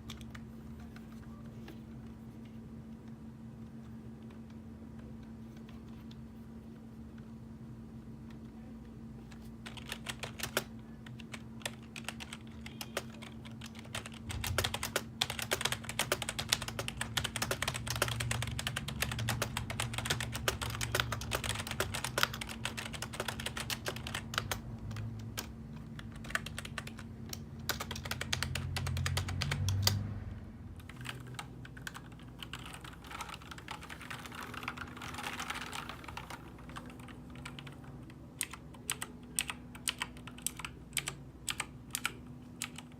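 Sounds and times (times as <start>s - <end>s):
faint low hum: 0.0s - 42.9s
fast typing on a keyboard: 9.6s - 30.0s, 30.8s - 42.9s.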